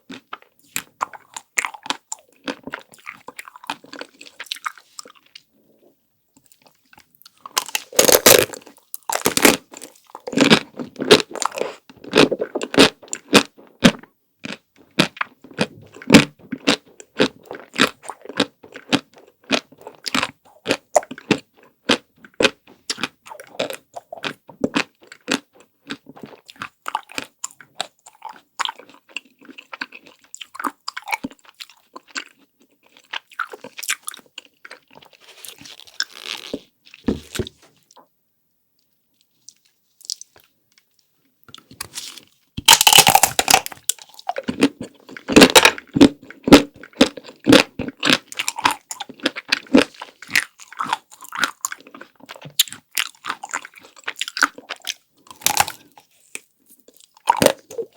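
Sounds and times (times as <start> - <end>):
crunchy ice cream chewing: 0.0 - 38.1, 39.1 - 57.9
crackling bite: 7.5 - 8.6, 41.8 - 44.7.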